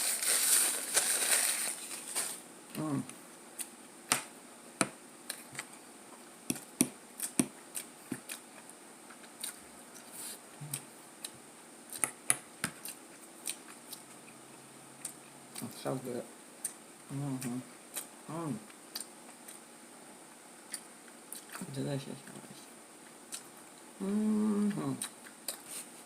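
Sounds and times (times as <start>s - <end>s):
chewing clicks and wet smacks: 18.9s - 19.6s, 20.7s - 22.4s.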